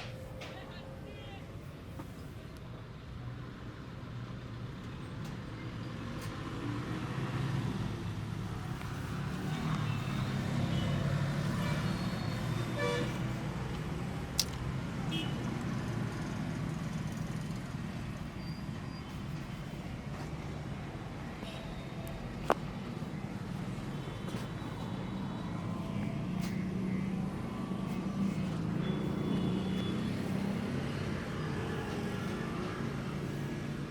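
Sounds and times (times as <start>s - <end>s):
vehicle engine rumble passing: 2.9s - 33.9s
horn toots: 10.7s - 13.3s.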